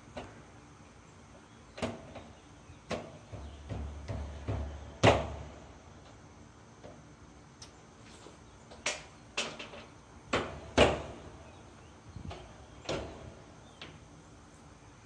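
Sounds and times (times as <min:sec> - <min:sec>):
metal door clacks and knocks: 0:02.9 - 0:05.6, 0:10.4 - 0:11.3.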